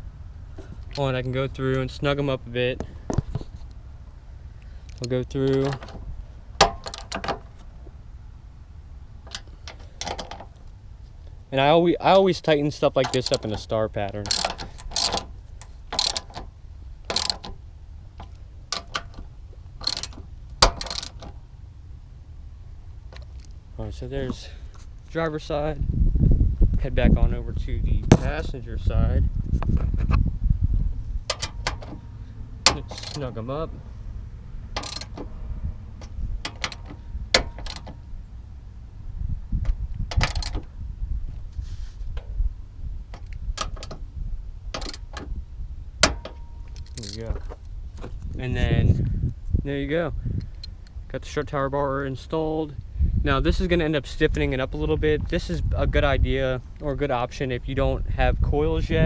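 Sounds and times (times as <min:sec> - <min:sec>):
socket ratchet clicking: 0:06.6 - 0:07.5, 0:14.3 - 0:17.6, 0:18.2 - 0:21.4, 0:31.3 - 0:32.0, 0:32.7 - 0:33.3, 0:34.8 - 0:35.3, 0:36.0 - 0:38.0, 0:40.1 - 0:40.7, 0:44.8 - 0:45.3.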